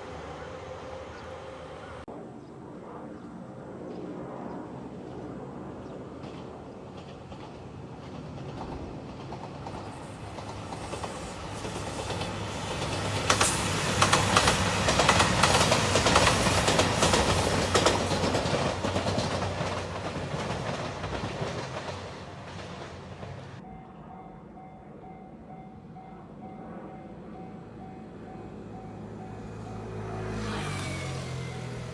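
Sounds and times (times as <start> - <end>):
diesel train engines humming: 0.0 - 2.1, 7.6 - 30.2.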